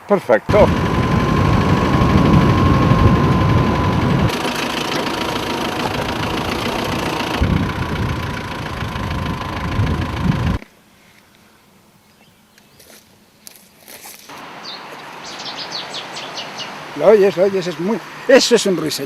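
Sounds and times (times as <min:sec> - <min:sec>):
vehicle engine running: 0:00.5 - 0:10.6.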